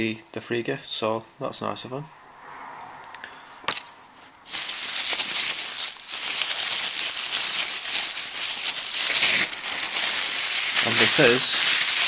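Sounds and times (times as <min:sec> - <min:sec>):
packaging crinkling: 0:04.5 - 0:12.0.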